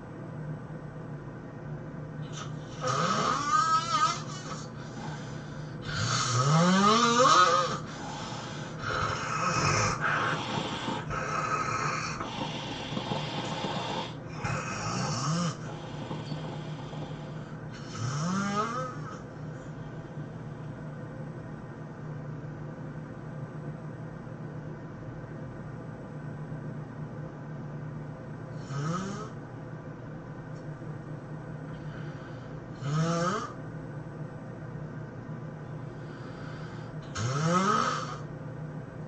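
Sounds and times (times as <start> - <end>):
man snoring heavily: 2.2 - 19.3, 28.6 - 29.4, 31.8 - 33.6, 36.0 - 38.3
quiet breaths: 2.2 - 21.3, 31.5 - 33.6, 35.0 - 38.4.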